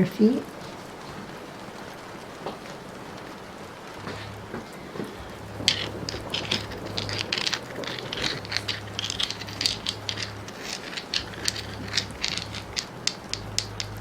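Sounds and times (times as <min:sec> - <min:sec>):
light clicks and ticks: 0:04.0 - 0:14.0.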